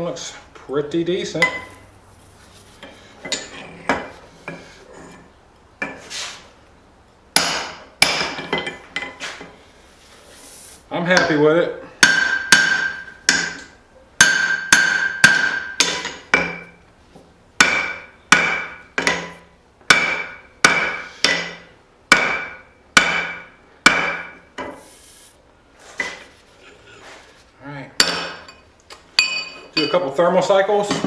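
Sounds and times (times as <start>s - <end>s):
hammer ringing on anvil: 12.0s - 13.6s, 14.2s - 16.7s, 29.2s - 30.2s.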